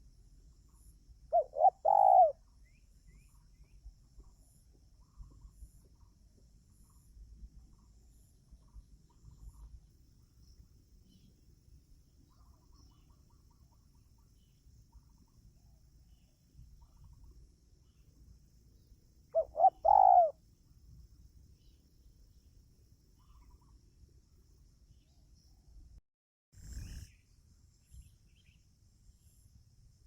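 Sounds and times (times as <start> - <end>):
dove cooing: 1.3 - 2.4, 19.4 - 20.4.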